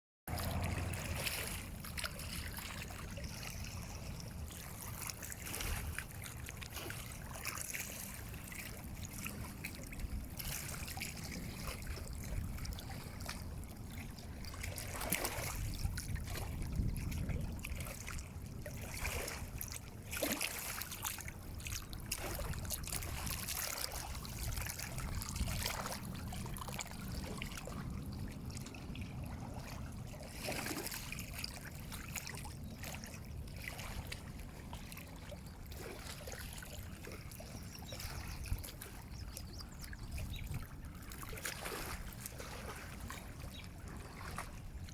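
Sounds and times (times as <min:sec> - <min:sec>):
water splashes: 0:00.3 - 0:44.9
water trickling and lapping: 0:00.3 - 0:44.9.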